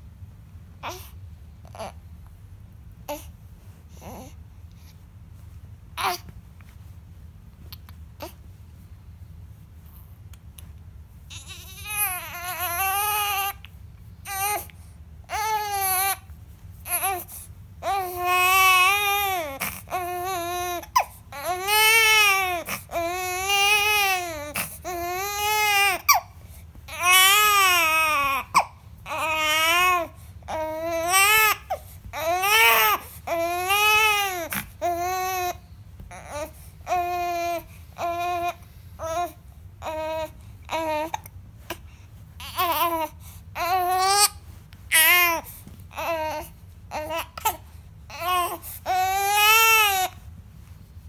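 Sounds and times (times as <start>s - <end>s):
baby crying: 11.3s - 13.6s, 15.3s - 16.2s, 17.8s - 26.2s, 26.9s - 41.2s, 44.9s - 50.2s.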